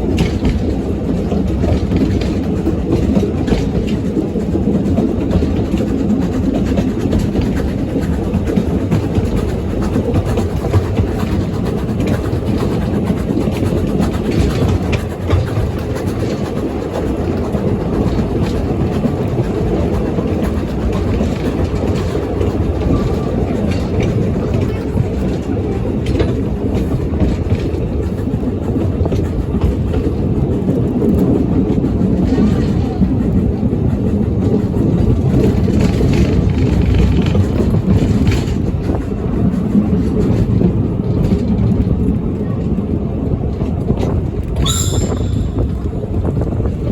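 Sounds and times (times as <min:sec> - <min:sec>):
clicks over rail joints: 0:00.0 - 0:30.2
train wheels rumbling on rails: 0:00.0 - 0:46.9.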